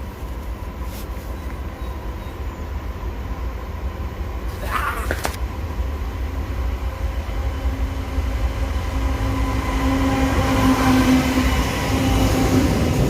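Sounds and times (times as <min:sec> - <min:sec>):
diesel locomotive rumbling: 0:00.0 - 0:13.0.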